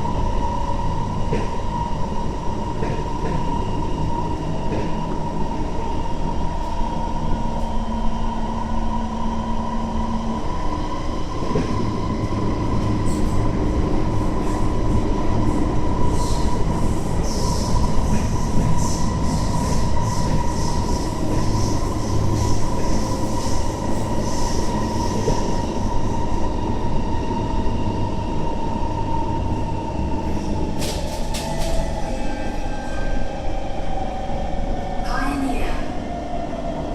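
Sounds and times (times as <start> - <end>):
train rumble: 0.0 - 36.9.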